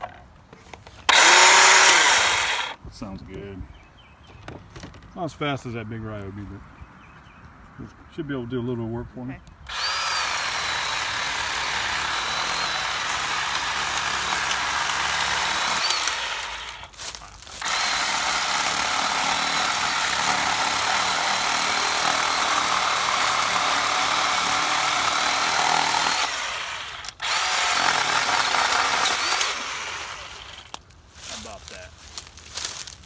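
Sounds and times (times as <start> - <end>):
chainsaw cutting branches: 1.1 - 2.8, 9.7 - 30.8
electric chainsaw whining: 1.1 - 2.8, 9.7 - 17.0, 17.6 - 30.8.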